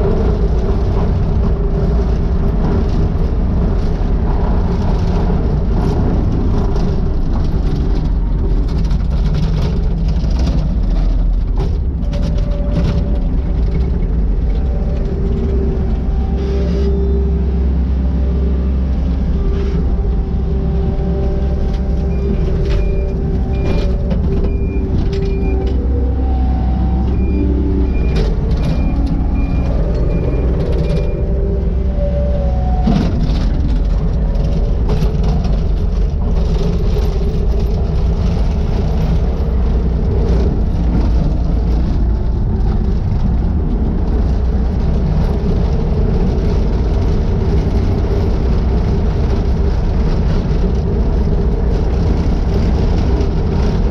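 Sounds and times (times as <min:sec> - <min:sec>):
diesel engine running under load: 0:00.0 - 0:53.9
backup alarm beeping: 0:21.0 - 0:33.1.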